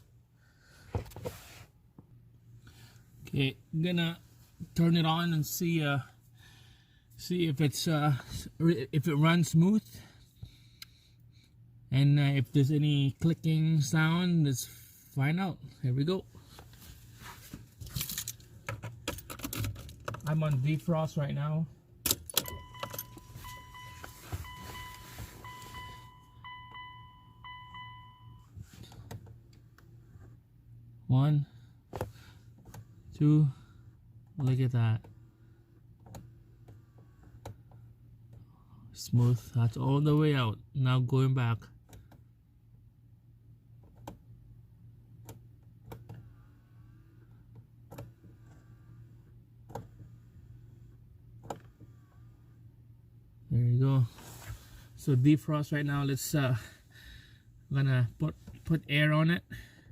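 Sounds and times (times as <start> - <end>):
low steady hum: 0.0 - 59.9
car warning chime tone: 9.0 - 10.1, 22.2 - 28.6
faint motor whine: 45.2 - 53.1.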